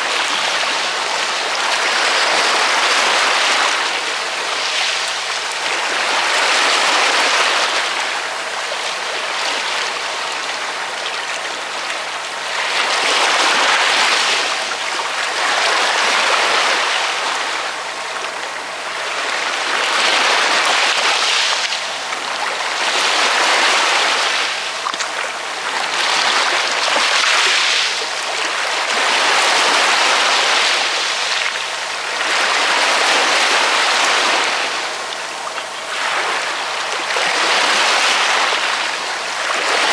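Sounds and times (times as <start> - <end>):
ocean waves breaking: 19.0 - 39.9.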